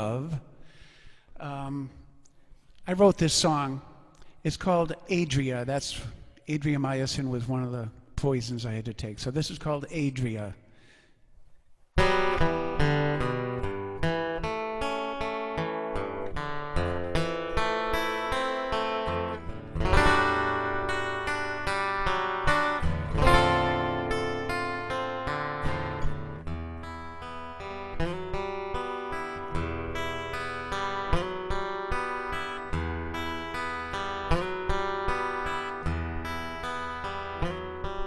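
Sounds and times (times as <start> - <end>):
acoustic guitar strumming chords: 12.0 - 38.0.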